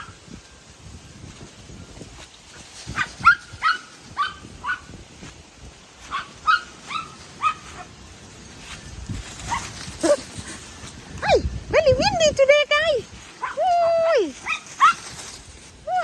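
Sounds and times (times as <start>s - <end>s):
wind rumbling on microphone: 0.0s - 16.0s
dog yipping: 3.0s - 4.9s, 6.1s - 7.9s, 14.4s - 15.0s.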